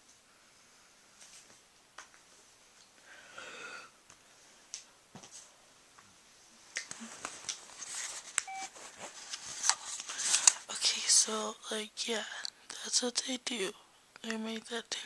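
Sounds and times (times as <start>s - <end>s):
rustling: 6.7s - 10.7s.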